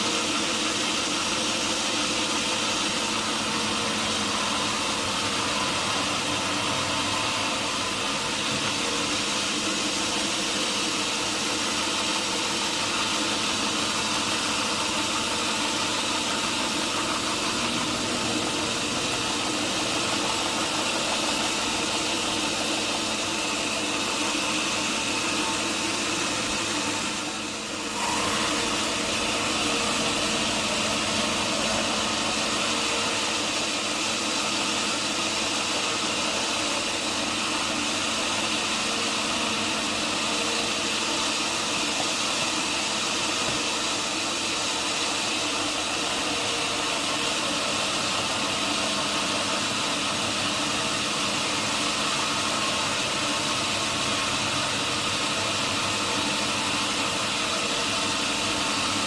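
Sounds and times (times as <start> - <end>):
sawmill engine and saw drone: 0.0 - 59.0.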